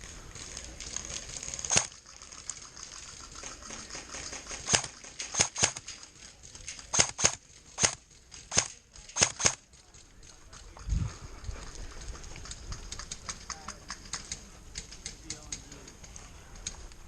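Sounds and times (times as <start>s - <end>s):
airsoft gun shots: 1.7s - 2.0s, 4.6s - 5.8s, 6.9s - 9.6s.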